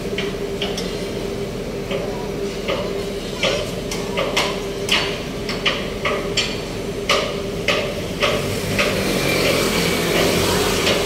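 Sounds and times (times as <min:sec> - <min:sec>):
traffic rumble: 0:06.8 - 0:11.0.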